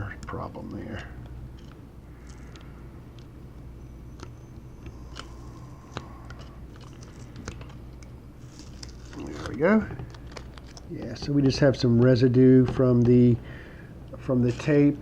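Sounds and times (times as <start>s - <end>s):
low steady hum: 0.0s - 15.0s
tape being peeled off: 8.4s - 10.9s.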